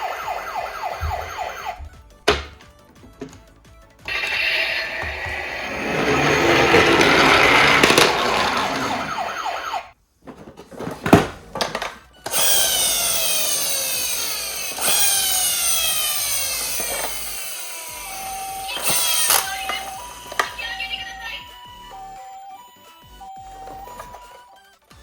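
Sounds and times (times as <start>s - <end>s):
toy siren whine falling in pitch: 0.0s - 1.8s, 4.1s - 9.9s, 12.3s - 24.6s
toy whirring: 4.1s - 9.7s, 11.7s - 22.3s.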